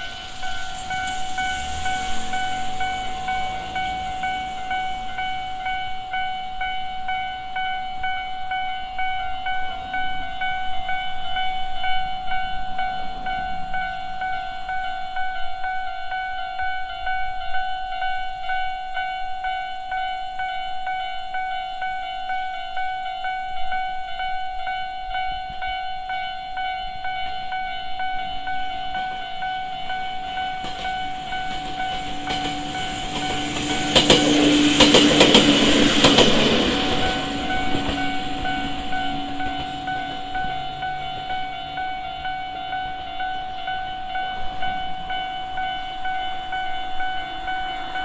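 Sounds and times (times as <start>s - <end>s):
level-crossing warning bell: 0.0s - 48.0s
train passing: 0.0s - 48.0s
wheel clatter over rail joints: 30.5s - 41.2s.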